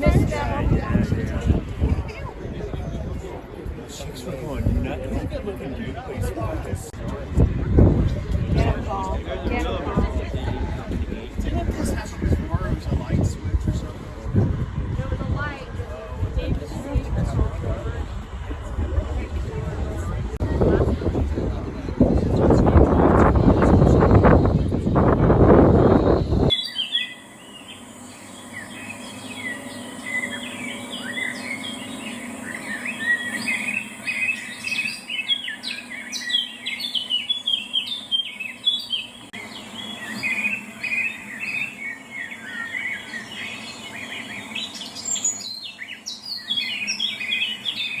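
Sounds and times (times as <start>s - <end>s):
small birds chirping: 21.6s - 48.0s.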